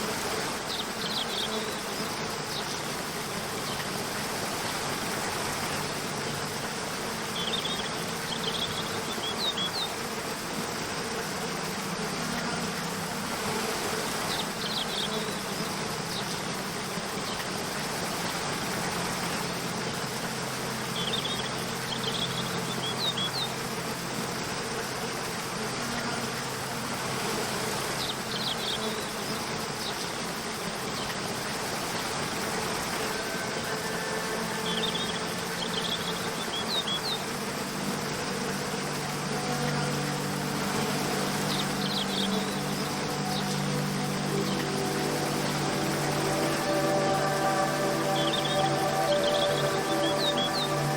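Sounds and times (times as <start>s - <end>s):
low droning background music: 0.5s - 28.8s, 32.0s - 50.9s
waterfall rushing: 30.3s - 50.9s
high bird chirps: 45.3s - 50.9s.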